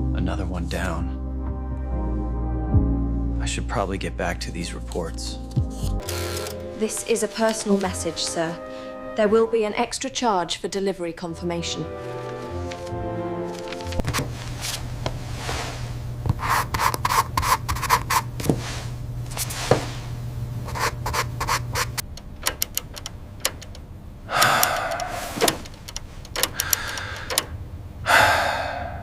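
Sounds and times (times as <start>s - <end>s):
rubbing and scraping: 12.0s - 22.0s
low steady hum: 13.0s - 29.0s
sharp clicks: 21.8s - 27.6s.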